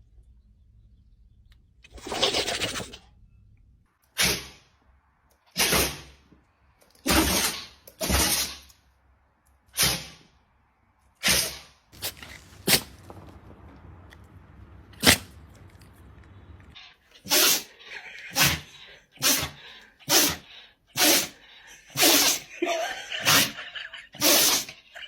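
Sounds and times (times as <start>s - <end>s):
dog sneezing: 4.2s - 4.5s, 15.0s - 15.4s, 17.2s - 17.7s, 18.3s - 20.4s, 21.0s - 22.5s, 23.2s - 23.6s, 24.2s - 24.8s.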